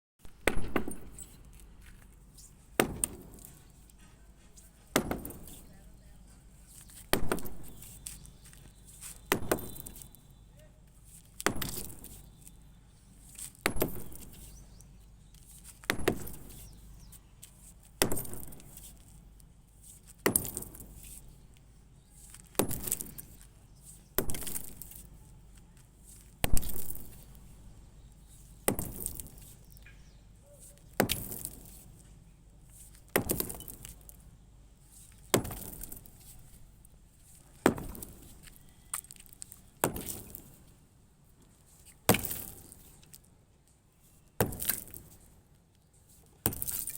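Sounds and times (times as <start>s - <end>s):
hammer blows on concrete: 2.8s - 5.9s, 6.9s - 12.6s.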